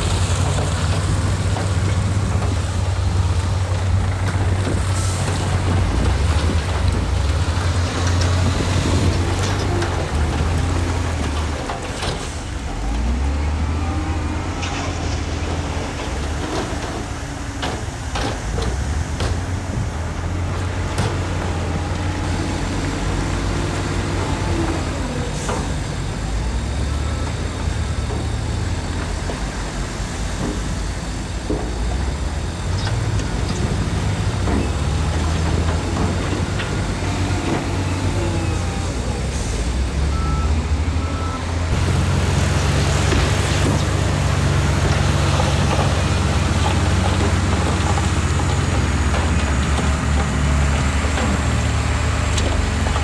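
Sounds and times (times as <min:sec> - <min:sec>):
heavy diesel machinery rumbling: 0:00.0 - 0:53.0
sharp knocks and clanks: 0:27.2 - 0:39.1, 0:41.7 - 0:53.0.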